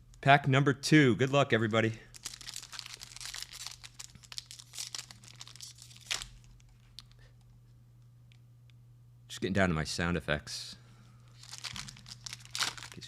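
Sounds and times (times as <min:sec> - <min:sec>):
foil wrapper crinkling and tearing: 0:02.1 - 0:07.2, 0:11.3 - 0:13.0
wrapper snapping: 0:02.1 - 0:07.2, 0:11.3 - 0:13.0.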